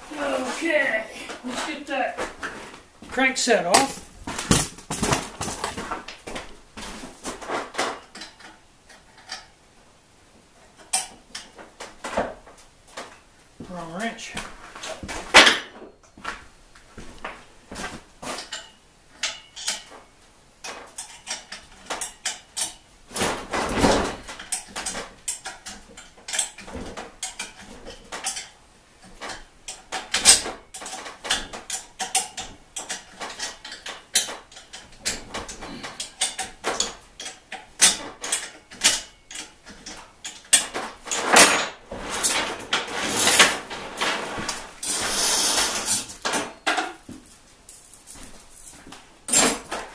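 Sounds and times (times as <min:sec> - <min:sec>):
metal tools clinking: 0:18.4 - 0:20.0, 0:23.8 - 0:43.8
scraping rattling: 0:21.2 - 0:46.8.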